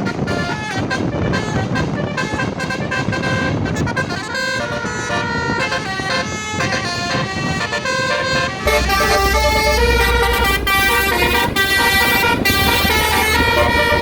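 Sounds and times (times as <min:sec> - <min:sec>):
multi-tone bus horn tune: 0:00.0 - 0:14.0
street noise: 0:00.0 - 0:14.0
engine rumble: 0:08.6 - 0:14.0.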